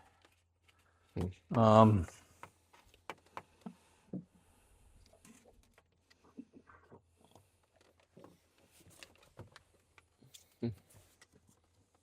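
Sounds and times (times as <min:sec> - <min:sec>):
faint clicks and taps: 0:00.2 - 0:04.3.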